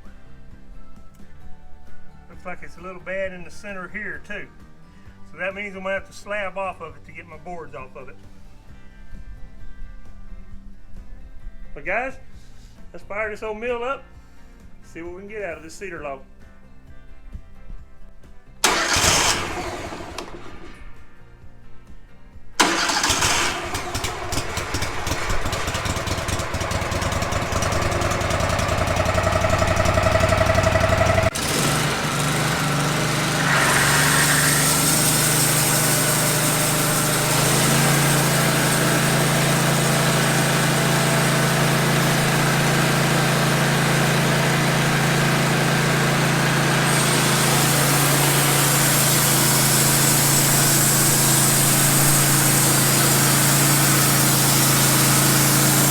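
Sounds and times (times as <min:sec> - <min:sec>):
sawmill engine running: 0:18.6 - 0:21.1, 0:22.6 - 0:55.9.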